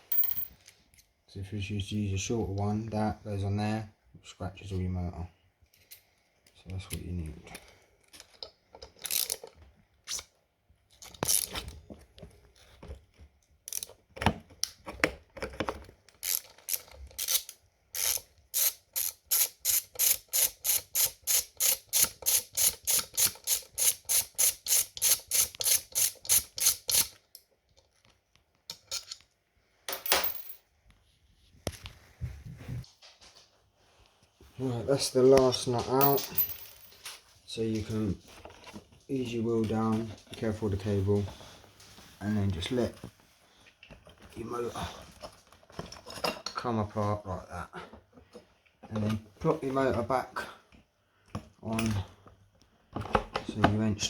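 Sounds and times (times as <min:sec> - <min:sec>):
ratchet wrench clicking: 0:09.0 - 0:09.4, 0:16.2 - 0:27.1.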